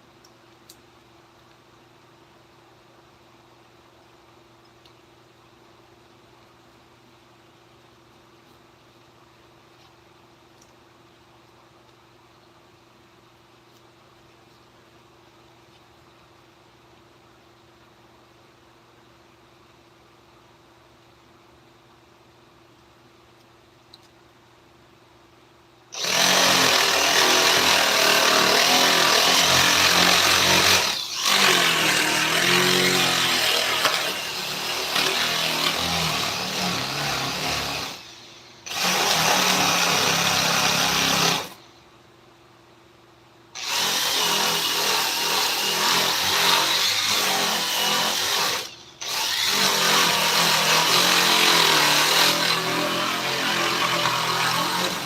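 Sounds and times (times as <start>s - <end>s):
power tool working wood: 26.0s - 41.6s, 43.6s - 55.0s.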